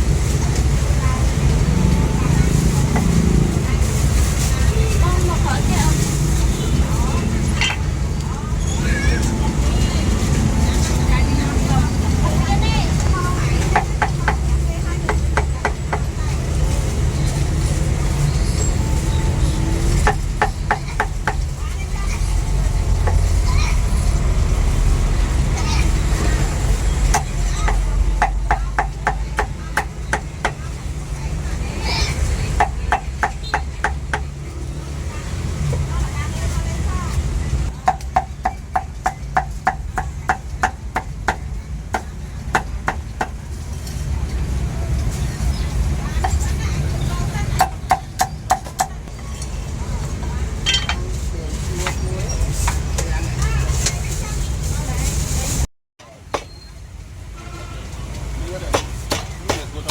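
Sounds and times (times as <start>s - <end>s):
low street rumble: 0.0s - 59.9s
steady low rumble: 16.1s - 29.7s
cleaver chopping meat on wood: 58.7s - 59.9s.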